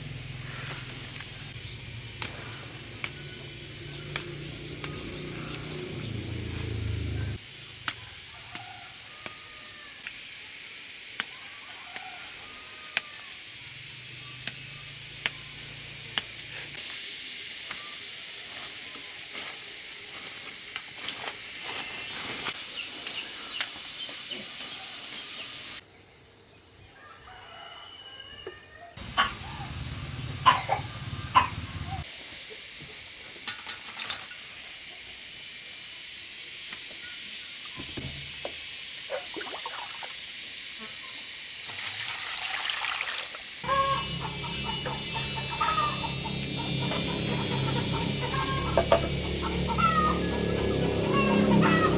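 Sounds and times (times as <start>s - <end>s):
chickens calling: 29.0s - 32.1s, 43.6s - 51.9s
steady hiss: 32.0s - 39.4s
hissing noise: 43.6s - 51.9s
steady low hum: 43.6s - 51.9s.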